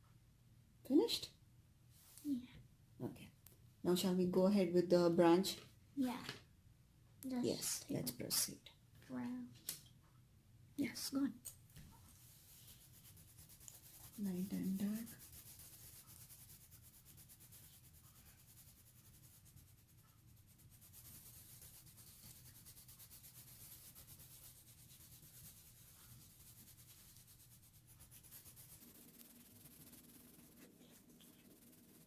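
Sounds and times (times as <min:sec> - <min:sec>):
colour pencils scratching on paper: 0:12.1 - 0:32.0.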